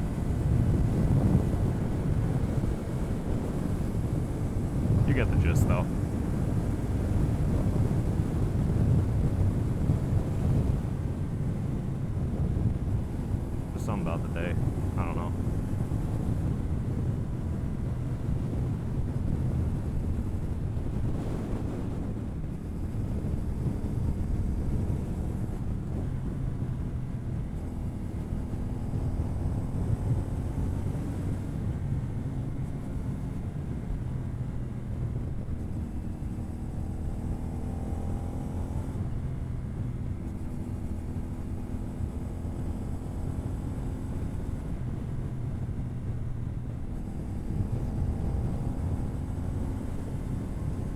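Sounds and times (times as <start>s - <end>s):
wind noise on microphone: 0.0s - 13.7s, 14.6s - 32.6s.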